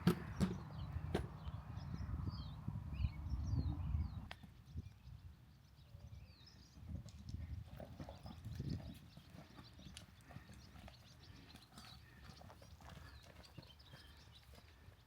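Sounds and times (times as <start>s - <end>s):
horse hooves clopping: 6.7s - 15.0s.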